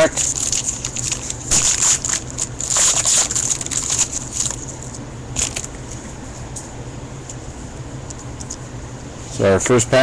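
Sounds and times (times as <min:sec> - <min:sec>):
wrapper crinkling and tearing: 0:00.0 - 0:05.8.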